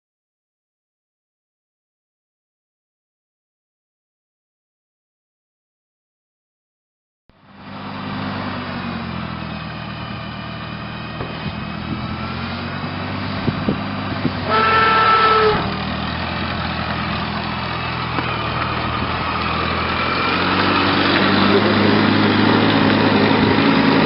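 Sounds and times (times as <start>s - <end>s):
engine running: 7.3s - 24.0s.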